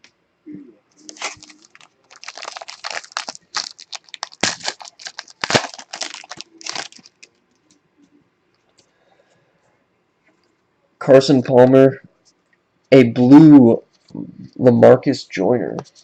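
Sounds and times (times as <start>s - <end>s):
foil wrapper tearing and crinkling: 1.1s - 7.3s.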